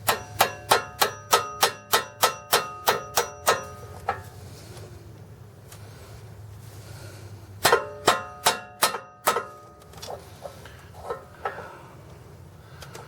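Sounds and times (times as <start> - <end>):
hammer striking metal punch: 0.0 - 4.3, 7.6 - 9.7.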